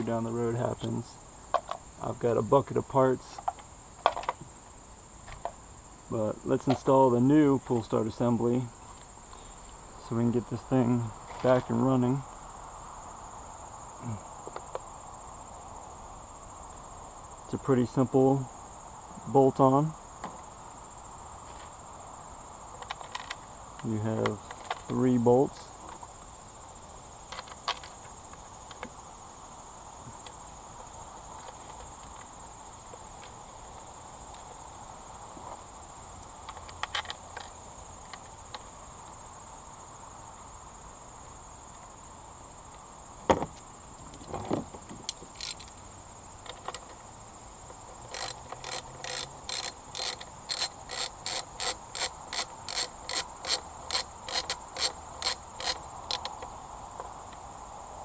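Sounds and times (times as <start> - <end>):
ratchet wrench clicking: 45.3 - 45.7, 48.0 - 56.4
metal parts knocking: 48.0 - 56.3.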